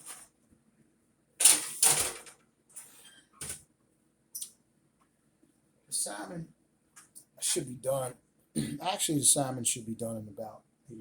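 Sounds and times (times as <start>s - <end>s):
kitchen items clattering: 1.4s - 3.6s.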